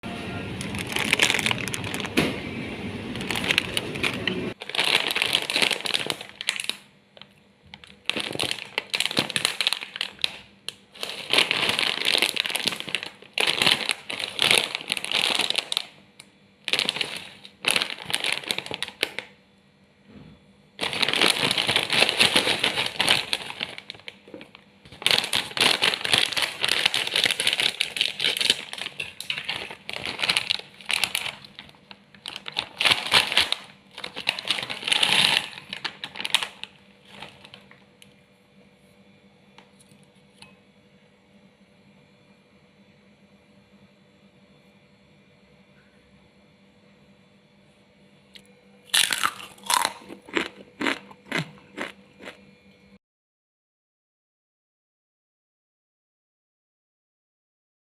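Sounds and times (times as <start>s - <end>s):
crunching of snack sticks chewed: 0.6s - 2.2s, 3.2s - 16.0s, 16.7s - 19.2s, 20.8s - 37.8s, 48.3s - 52.6s
plastic packet crinkling: 0.6s - 2.3s, 3.1s - 16.0s, 16.6s - 19.4s, 20.8s - 37.8s, 48.9s - 52.4s.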